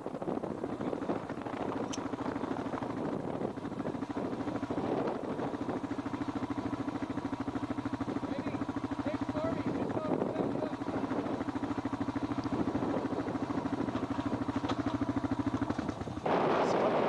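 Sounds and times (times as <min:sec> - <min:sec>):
engine running: 0:00.0 - 0:17.0.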